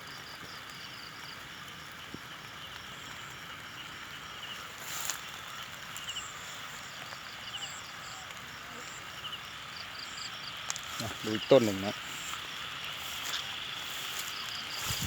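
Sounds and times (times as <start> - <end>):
steady rain: 0.0 - 15.0
strong wind: 14.7 - 15.0.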